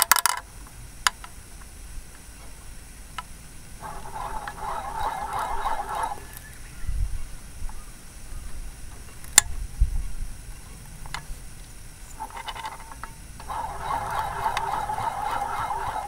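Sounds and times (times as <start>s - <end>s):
sharp clicks: 3.2s - 6.6s, 12.2s - 16.0s
scooter engine rumbling: 3.4s - 8.1s, 12.0s - 16.0s
rattling bearing noise: 3.8s - 6.6s, 12.2s - 16.0s.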